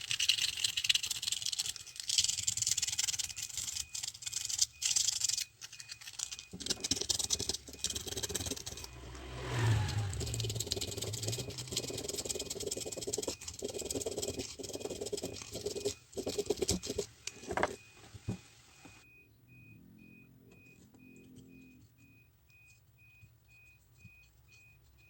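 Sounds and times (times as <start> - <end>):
high electronic beep: 5.8 - 12.7, 18.8 - 24.8.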